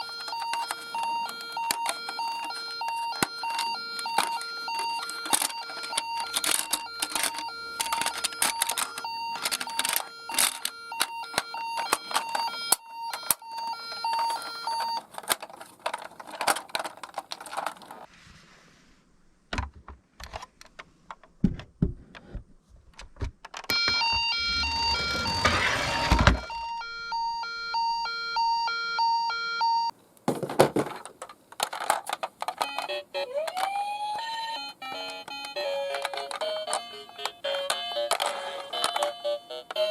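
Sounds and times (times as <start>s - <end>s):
two-tone ambulance siren: 0.0s - 15.0s, 23.7s - 29.9s, 32.7s - 39.9s
rising siren wail: 23.7s - 27.5s
toy cars clattering down a slope: 35.9s - 39.2s.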